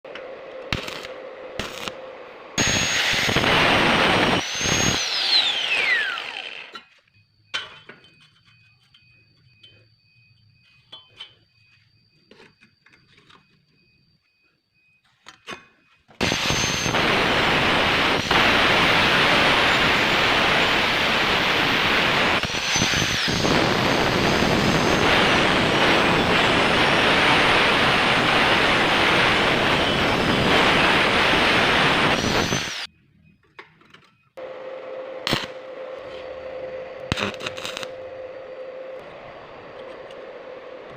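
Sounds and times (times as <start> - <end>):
grinder cutting steel: 2.6 - 6.9, 16.2 - 32.9, 37.1 - 38.2.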